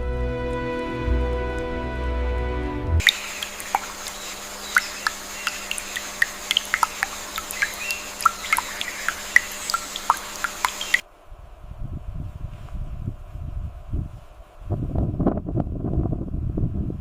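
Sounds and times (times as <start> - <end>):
steady high hiss: 3.0 - 11.0
high-pitched chirps: 3.1 - 11.0.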